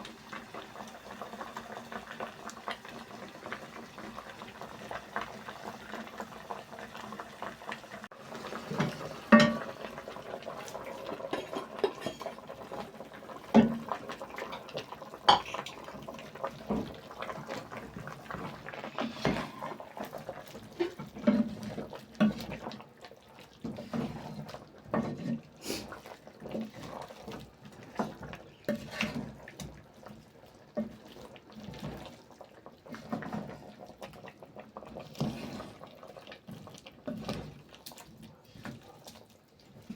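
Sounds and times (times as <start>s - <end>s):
utensils clinking against pots: 8.7s - 9.9s, 11.2s - 12.9s, 13.5s - 15.8s.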